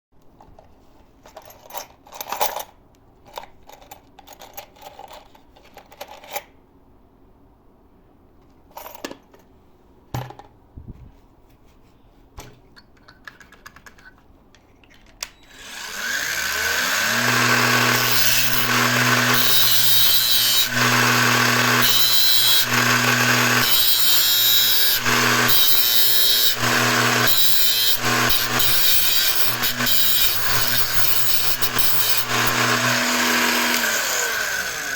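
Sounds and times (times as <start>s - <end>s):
clicks and knocks of tools: 12.4s - 15.4s
drill bit grinding on disc: 15.5s - 34.9s
power grinder motor humming: 15.5s - 34.9s.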